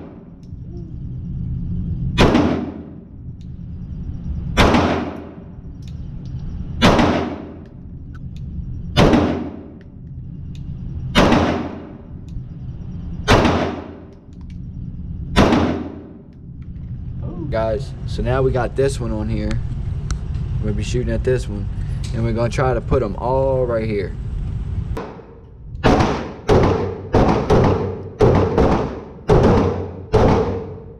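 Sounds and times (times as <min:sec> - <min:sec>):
steady low rumble: 0:00.0 - 0:30.9
handgun shots with ringing echo: 0:02.2 - 0:02.9, 0:06.8 - 0:07.6, 0:09.0 - 0:09.6, 0:11.2 - 0:12.0, 0:13.3 - 0:14.1, 0:15.4 - 0:16.1.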